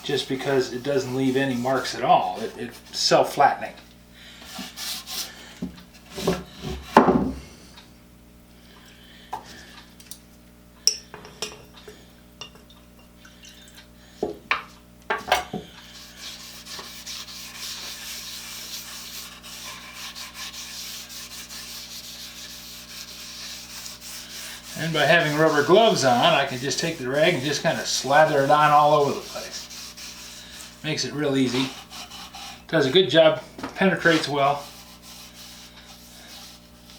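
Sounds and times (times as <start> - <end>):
rag rubbing on wood: 0.0 - 3.2, 15.8 - 33.0, 33.9 - 36.9.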